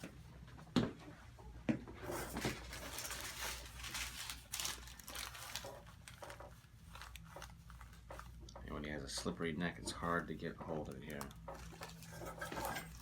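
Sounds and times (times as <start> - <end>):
hands rustling and crinkling: 2.1 - 8.5.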